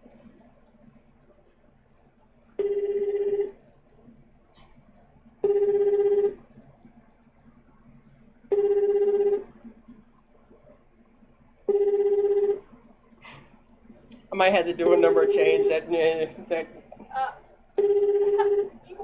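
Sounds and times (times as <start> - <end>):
telephone ringback tone: 2.6 - 3.6, 5.4 - 6.4, 8.5 - 9.6, 11.7 - 12.7, 14.8 - 15.9, 17.8 - 18.8.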